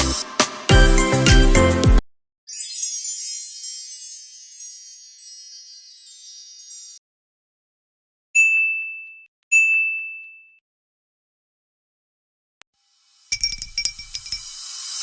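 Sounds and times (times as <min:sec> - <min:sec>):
shimmering chimes: 0:02.5 - 0:07.0
bell ding: 0:08.4 - 0:10.6.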